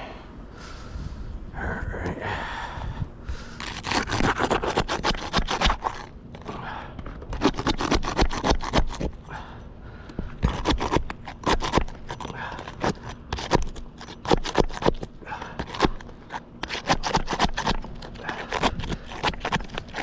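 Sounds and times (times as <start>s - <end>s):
hand tool scraping under shingles: 3.4s - 9.5s, 10.2s - 20.0s.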